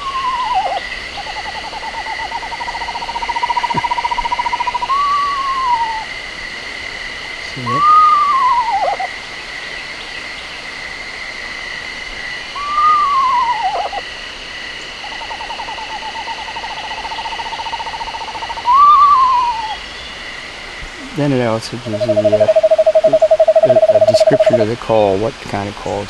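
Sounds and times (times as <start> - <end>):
screech owl whinny: 0.0 - 2.5, 4.2 - 6.1, 7.6 - 9.1, 12.6 - 14.0, 18.6 - 19.8
screech owl trill: 0.0 - 6.1, 7.6 - 9.1, 12.5 - 14.0, 15.0 - 20.0, 21.8 - 24.6.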